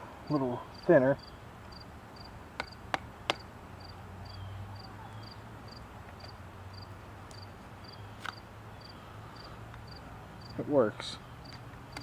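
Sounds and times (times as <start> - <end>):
insect chirping: 0.7 - 2.8, 3.8 - 10.6.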